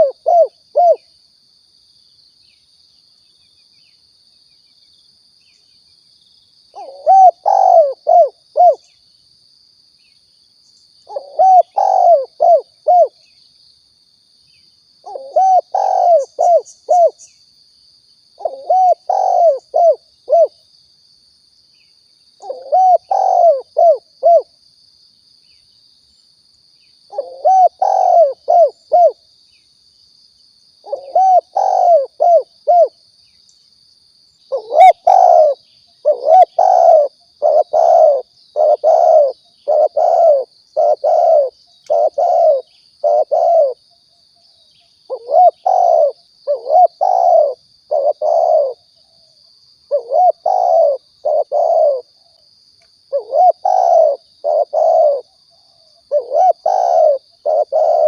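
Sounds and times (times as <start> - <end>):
dove cooing: 0.0 - 1.1, 6.7 - 8.9, 11.1 - 13.2, 15.0 - 17.2, 18.4 - 20.6, 22.4 - 24.5, 27.1 - 29.2, 30.8 - 33.0, 34.5 - 43.8, 45.1 - 48.9, 49.9 - 52.2, 53.1 - 55.4, 56.0 - 58.0.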